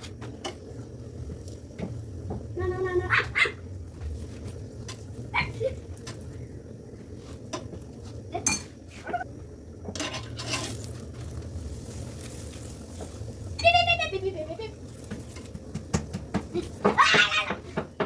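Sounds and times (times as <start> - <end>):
dishes and utensils clinking: 8.4 - 8.7, 9.9 - 10.8.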